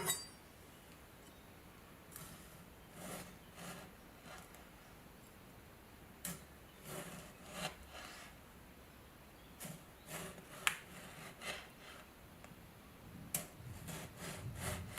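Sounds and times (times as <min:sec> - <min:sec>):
tool scraping hard surface: 0:00.0 - 0:00.4, 0:06.8 - 0:08.4.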